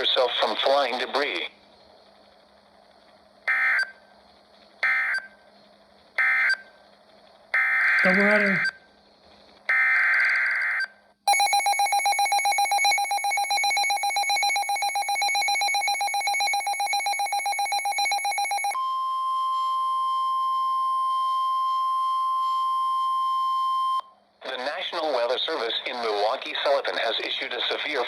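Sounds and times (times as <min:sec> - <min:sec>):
steady warning alarm tone: 0:07.6 - 0:08.7, 0:10.6 - 0:18.8
pulsing alarm tone beeps: 0:11.3 - 0:18.8.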